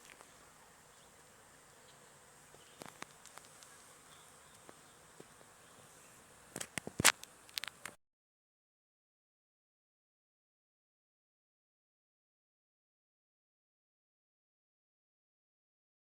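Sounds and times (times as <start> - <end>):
faint insect buzzing: 0.0 - 8.0.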